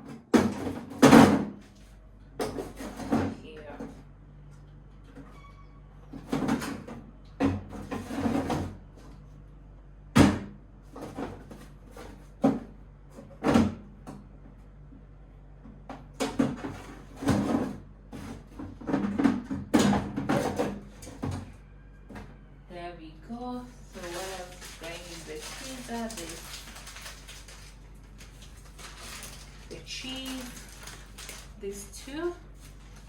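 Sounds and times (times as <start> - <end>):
plastic rustling: 23.7 - 33.0.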